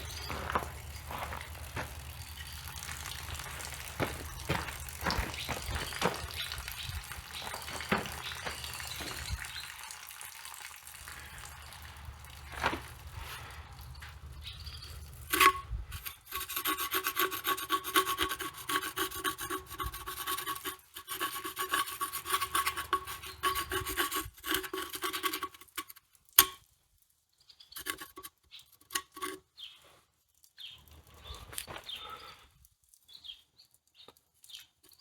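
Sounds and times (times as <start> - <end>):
hand scrubbing metal pipe: 0.0 - 9.4, 15.2 - 26.0.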